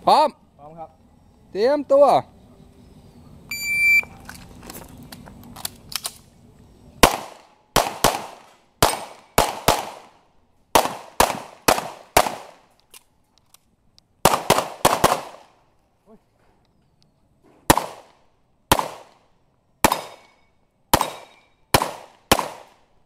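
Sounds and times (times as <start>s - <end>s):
pistol shots with echo: 7.0s - 10.2s, 10.8s - 12.6s, 14.2s - 15.5s, 17.7s - 19.2s, 19.8s - 22.8s.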